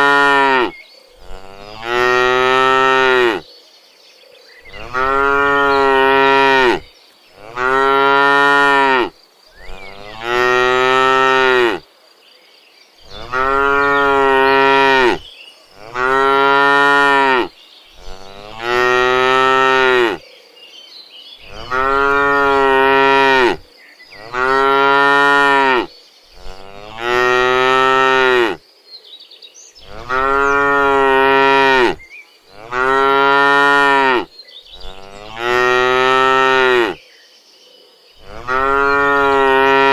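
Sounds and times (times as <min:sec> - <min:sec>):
cattle mooing: 0:00.0 - 0:03.4, 0:04.7 - 0:06.8, 0:09.7 - 0:11.8, 0:13.1 - 0:15.2, 0:15.8 - 0:20.2, 0:21.5 - 0:23.6, 0:24.2 - 0:28.6, 0:29.8 - 0:32.0, 0:32.6 - 0:37.0, 0:38.2 - 0:39.9.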